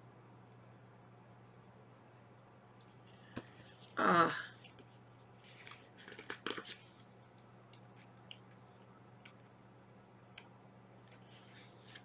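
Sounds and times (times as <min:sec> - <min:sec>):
low steady hum: 0:00.0 - 0:12.0
paper rustling: 0:04.6 - 0:08.2, 0:11.0 - 0:12.0.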